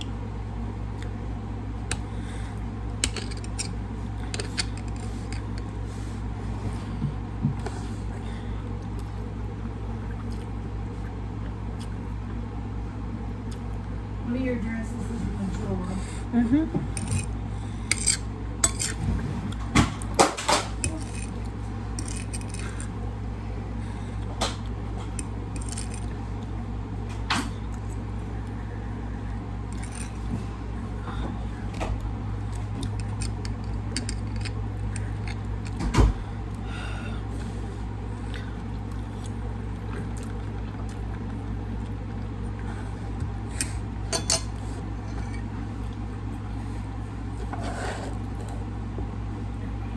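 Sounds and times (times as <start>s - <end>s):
low hum: 0.0s - 49.9s
cutlery clinking on a plate: 44.1s - 44.6s.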